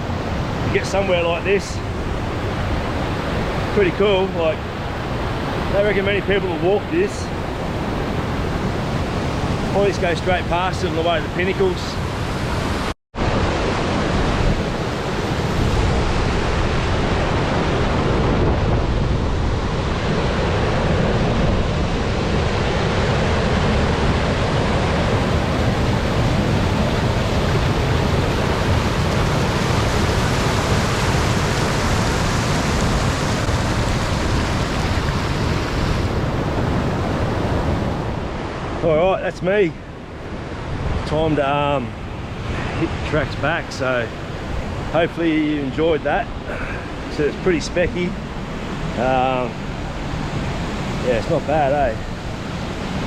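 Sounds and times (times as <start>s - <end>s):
waterfall roaring: 22.0s - 39.2s, 40.3s - 53.0s.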